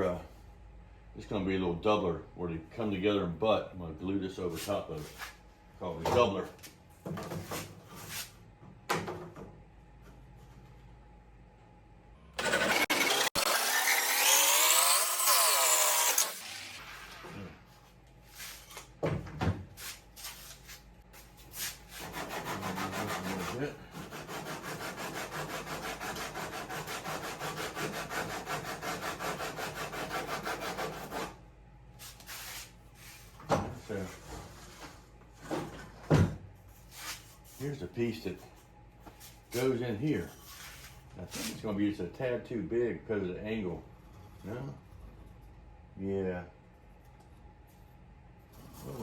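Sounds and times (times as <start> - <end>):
hand saw cutting wood: 12.4 - 17.4, 21.9 - 31.4.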